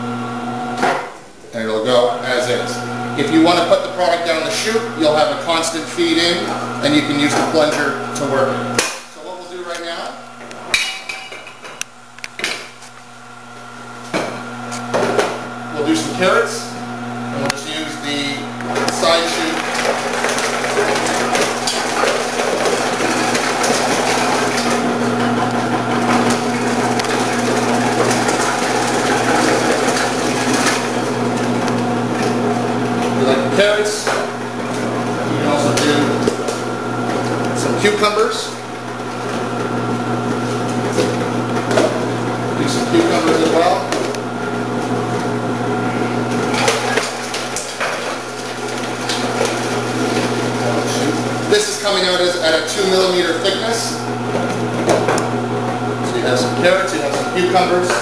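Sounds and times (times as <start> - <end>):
vegetable processor humming: 0.0 - 8.8, 13.4 - 58.0
vegetable cutter motor humming: 18.6 - 33.6, 43.7 - 52.5.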